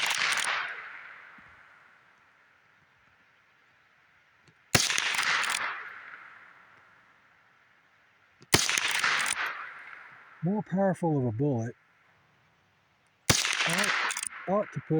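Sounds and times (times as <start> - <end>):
rifle shots with echo: 0.0 - 3.2, 4.5 - 11.1, 13.2 - 14.9.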